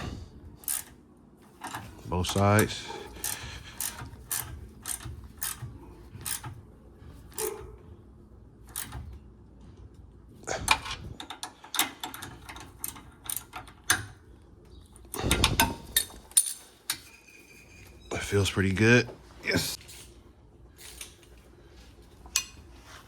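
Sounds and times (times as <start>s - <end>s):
hand ratchet clicking: 0.6s - 0.9s, 1.6s - 6.6s, 10.7s - 14.1s.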